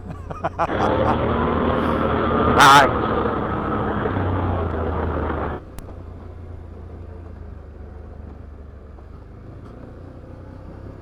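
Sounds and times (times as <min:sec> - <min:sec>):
engine running under throttle: 0:00.6 - 0:05.8.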